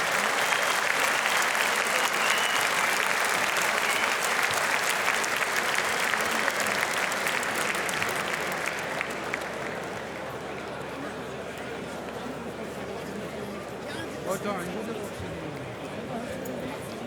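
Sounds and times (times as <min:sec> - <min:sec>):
crowd applauding: 0:00.0 - 0:12.1.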